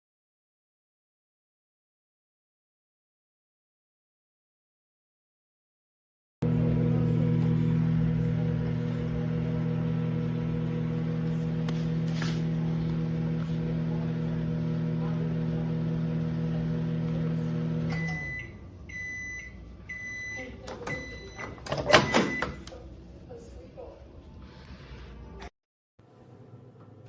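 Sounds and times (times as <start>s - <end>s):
microwave oven humming: 6.4s - 23.2s, 26.0s - 27.0s.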